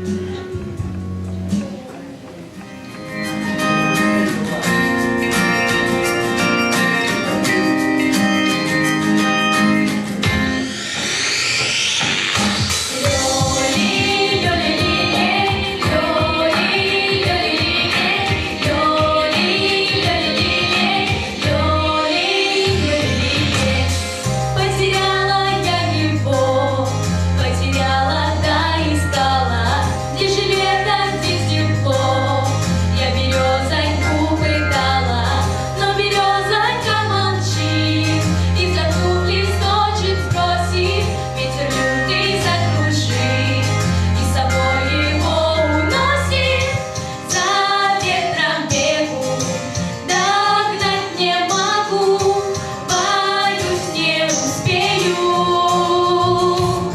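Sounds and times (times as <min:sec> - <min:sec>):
backing track with bass and beat: 0:00.0 - 0:21.9
female voices singing: 0:12.9 - 0:56.9.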